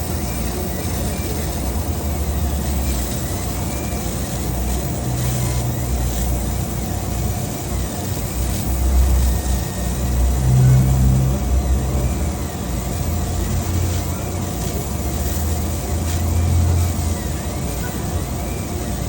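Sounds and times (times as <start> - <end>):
fans and pumps humming: 0.0 - 19.0
stepper motors whining: 0.0 - 19.0.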